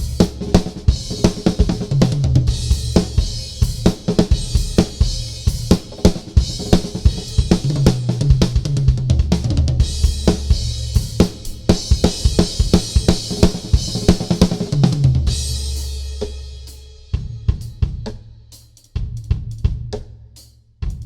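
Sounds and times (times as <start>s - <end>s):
deep drums ringing: 0.0s - 15.9s
snare and bass drum strokes: 0.0s - 18.3s
cymbals and hi-hat: 0.0s - 21.0s.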